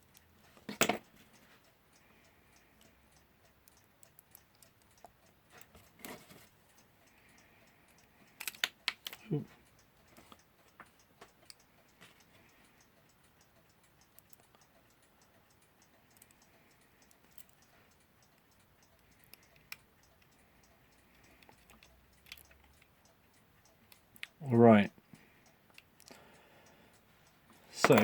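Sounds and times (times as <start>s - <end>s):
small tool clicks on clock: 0.0s - 24.4s.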